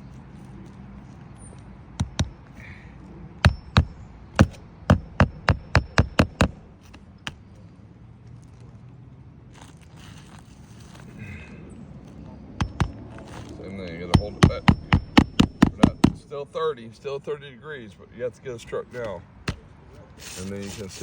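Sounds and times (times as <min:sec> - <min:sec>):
hammer driving nails into shingles: 0:03.4 - 0:07.4, 0:12.6 - 0:13.0, 0:14.1 - 0:16.2.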